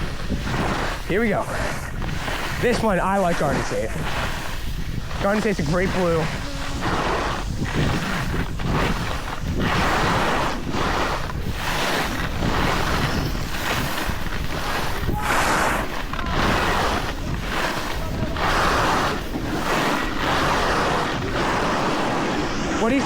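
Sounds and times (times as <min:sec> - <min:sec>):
skis scraping over snow: 0:00.0 - 0:23.0
wind on microphone: 0:00.0 - 0:23.0.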